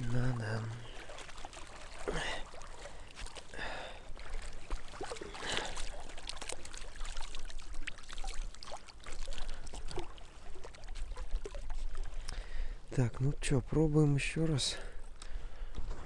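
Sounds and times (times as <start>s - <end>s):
hands splashing in water: 0.8s - 12.2s.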